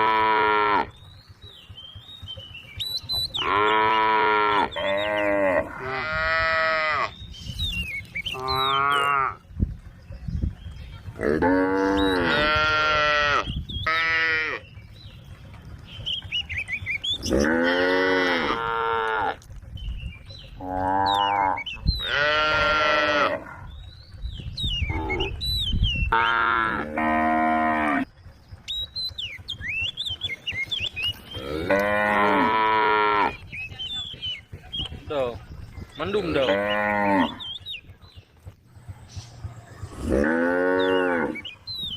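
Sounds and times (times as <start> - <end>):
cows mooing: 0.0 - 1.0, 3.2 - 7.2, 8.3 - 9.4, 11.2 - 14.6, 17.2 - 19.4, 20.6 - 23.7, 24.8 - 25.4, 26.1 - 28.1, 31.2 - 33.4, 36.1 - 37.6, 39.6 - 41.7.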